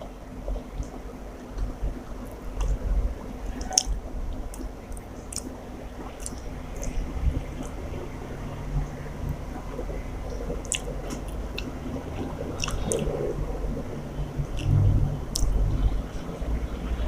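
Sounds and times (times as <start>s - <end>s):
wet chewing mouth sounds: 3.6s - 7.8s, 10.4s - 11.8s, 12.6s - 13.2s, 14.5s - 15.7s
small sharp mouth clicks: 6.2s - 7.0s, 10.7s - 10.9s, 12.6s - 13.1s, 14.6s - 15.5s.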